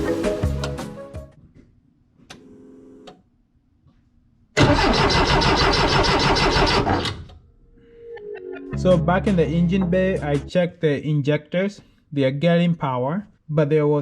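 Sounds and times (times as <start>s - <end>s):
engine cranking on starter: 4.6s - 7.4s.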